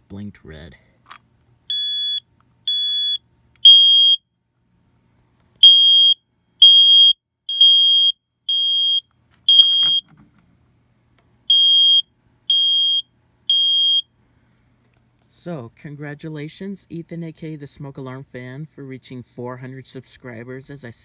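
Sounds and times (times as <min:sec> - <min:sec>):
smoke alarms beeping: 0:01.7 - 0:04.2, 0:05.6 - 0:10.1, 0:11.5 - 0:14.1.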